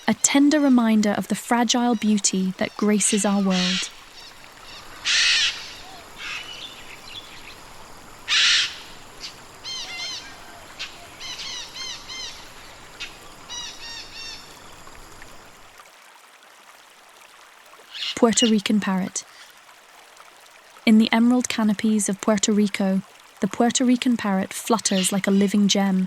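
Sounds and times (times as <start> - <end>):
parrot harsh screeches: 5.0 - 6.4, 8.3 - 8.8.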